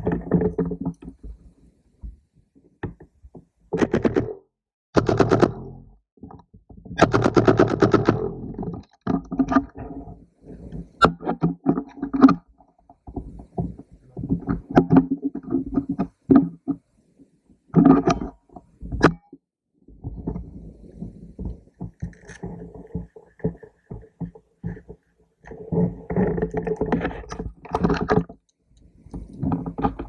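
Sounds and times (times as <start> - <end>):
rustling and knocking: 12.9 - 16.8, 19.9 - 28.4.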